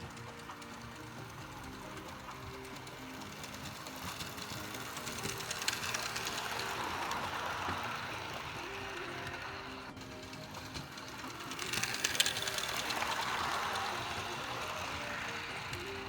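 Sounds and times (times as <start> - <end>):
model train motor whirring: 0.0 - 16.0
soft background music: 0.0 - 16.0
train wheels clicking: 0.0 - 16.0.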